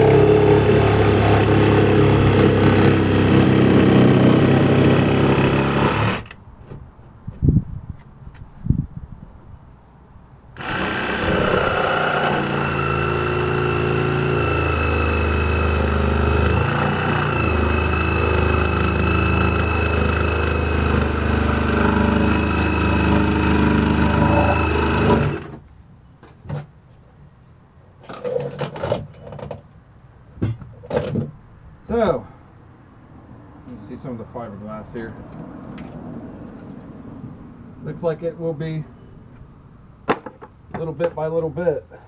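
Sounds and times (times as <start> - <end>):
power tool motor running: 0.0 - 6.3, 10.6 - 25.6.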